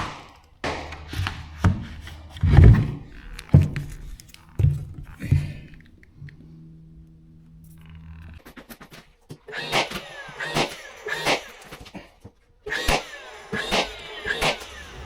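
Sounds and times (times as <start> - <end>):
faint low hum: 0.0 - 9.4.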